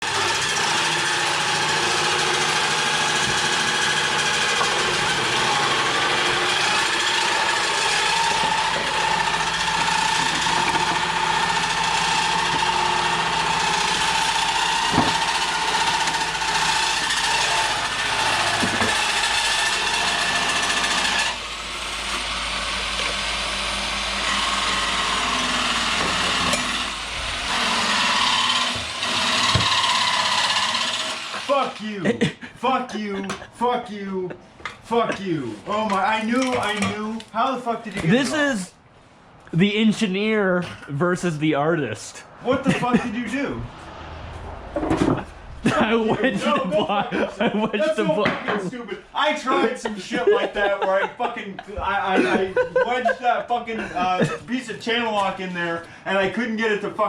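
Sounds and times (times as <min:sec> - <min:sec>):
power tool motor whining: 0:00.0 - 0:31.8
sharp knocks: 0:14.8 - 0:15.4, 0:29.4 - 0:29.9.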